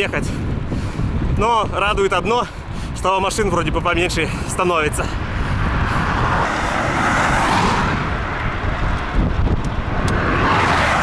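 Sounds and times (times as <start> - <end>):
wind rushing over microphone: 0.0 - 11.0
tyre hiss of passing cars: 5.9 - 8.0.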